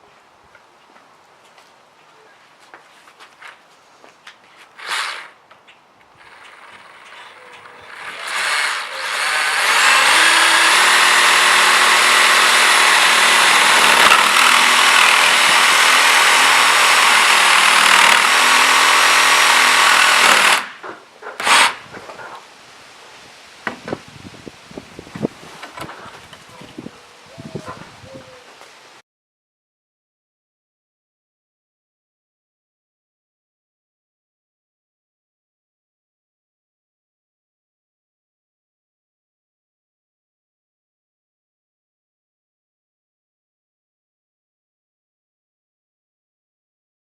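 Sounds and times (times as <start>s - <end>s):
electric jigsaw sawing battery: 4.8s - 5.4s, 6.2s - 21.9s.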